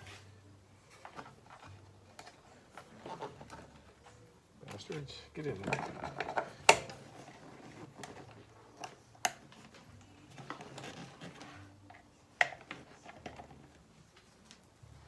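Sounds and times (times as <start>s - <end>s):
hardware clicks and taps: 5.6s - 7.0s.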